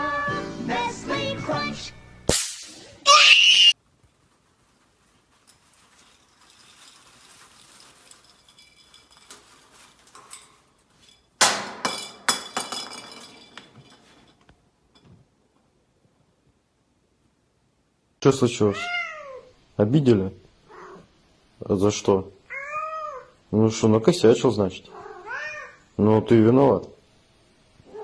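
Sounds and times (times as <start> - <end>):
objects falling and breaking: 4.0 - 14.5.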